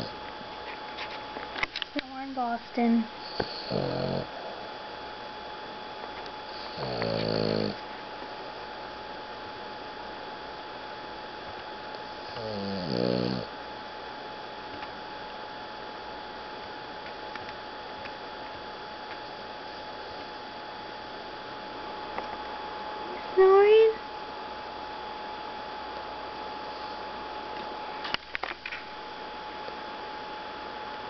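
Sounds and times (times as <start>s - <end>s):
dog snoring: 0.0s - 0.2s, 3.2s - 4.6s, 6.4s - 7.9s, 12.2s - 13.6s, 26.6s - 27.2s
faint steady hum: 0.0s - 31.0s.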